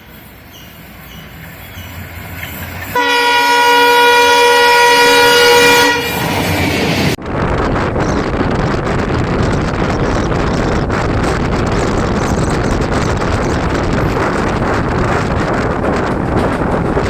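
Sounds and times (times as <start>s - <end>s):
train rumbling on rails: 0.0s - 17.0s
train horn blast: 2.9s - 6.4s.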